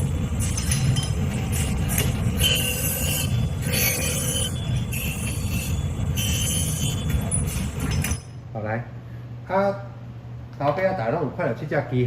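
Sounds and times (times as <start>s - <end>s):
high scraping squeal: 0.0s - 8.1s
grinding machine rumble: 0.0s - 8.4s.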